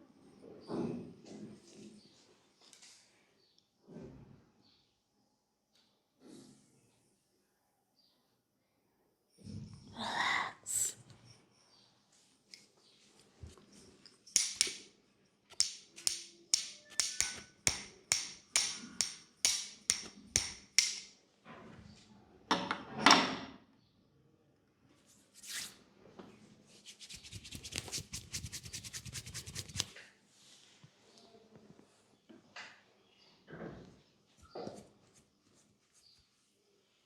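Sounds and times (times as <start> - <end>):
quick sharp massage strokes: 26.7 - 30.0.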